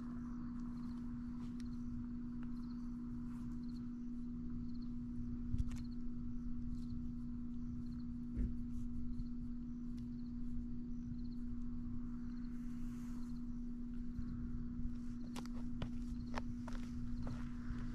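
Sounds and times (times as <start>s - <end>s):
insect chirps: 0.0s - 17.9s
steady low hum: 0.0s - 17.9s
wind buffeting microphone: 14.0s - 17.9s.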